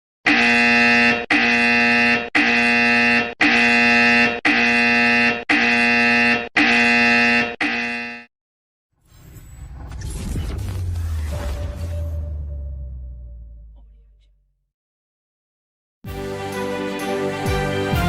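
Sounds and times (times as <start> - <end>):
electronic alarm buzzing tone: 0.2 - 8.3.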